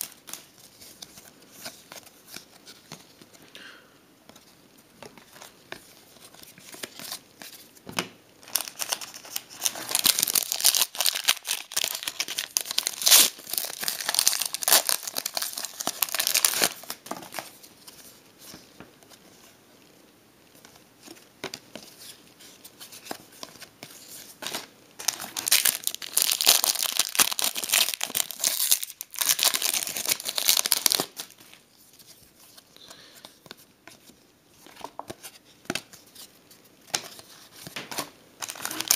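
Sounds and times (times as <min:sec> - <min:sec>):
wrappers tearing and crinkling: 0:08.4 - 0:17.4, 0:25.0 - 0:31.4, 0:38.4 - 0:38.9.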